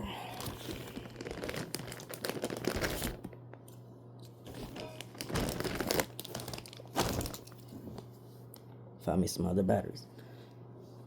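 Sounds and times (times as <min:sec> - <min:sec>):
low steady hum: 0:00.0 - 0:11.0
rustling and crinkling handling: 0:00.3 - 0:03.8, 0:04.4 - 0:08.5.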